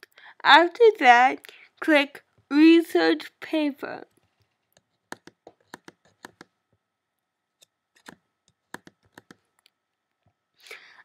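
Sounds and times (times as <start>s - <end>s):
faint steady hum: 0.0s - 11.0s
mouse and key clicks: 4.8s - 6.5s, 7.6s - 9.8s.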